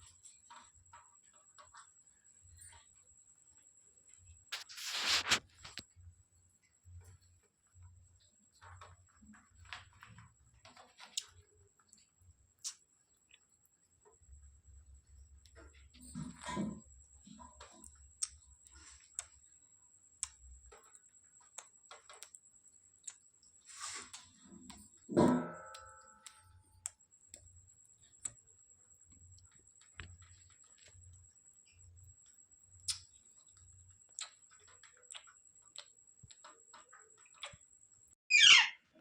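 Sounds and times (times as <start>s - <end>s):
parrot call: 38.3s - 38.9s.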